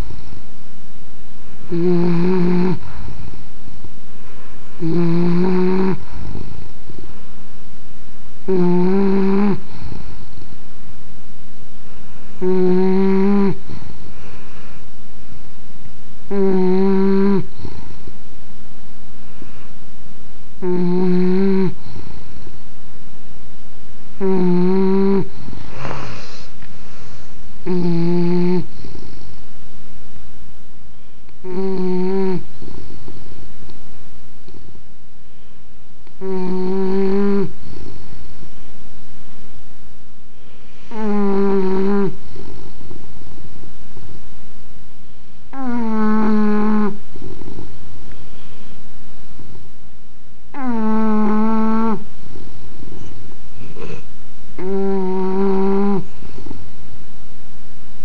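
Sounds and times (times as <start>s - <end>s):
dog snoring: 1.6s - 3.3s, 4.3s - 6.6s, 8.4s - 10.2s, 12.3s - 14.8s, 16.3s - 18.0s, 20.6s - 22.3s, 24.2s - 29.2s, 31.4s - 32.9s, 36.1s - 38.1s, 40.7s - 42.7s, 45.5s - 47.6s, 50.5s - 52.1s, 53.0s - 56.5s
rough noisy breath: 2.5s - 7.5s, 8.6s - 10.8s, 13.4s - 15.5s, 17.4s - 18.4s, 19.1s - 20.2s, 21.6s - 22.8s, 24.8s - 29.9s, 40.2s - 43.4s, 51.6s - 56.8s
rough faint breath: 13.6s - 15.0s, 25.2s - 27.5s, 52.9s - 54.2s.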